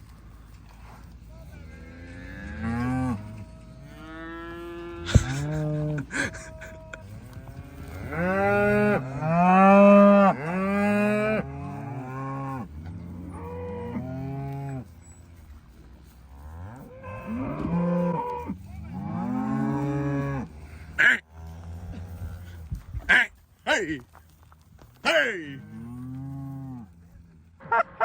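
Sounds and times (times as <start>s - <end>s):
cattle mooing: 1.7s - 14.9s, 16.3s - 24.0s, 25.0s - 27.0s.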